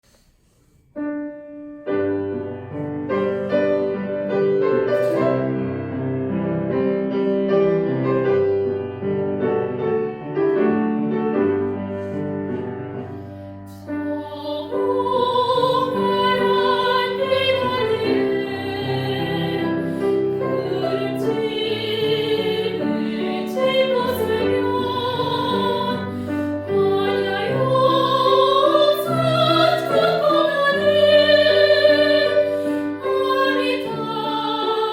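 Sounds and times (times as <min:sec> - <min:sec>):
piano: 0:00.0 - 0:34.9
person singing with vibrato: 0:14.0 - 0:34.9.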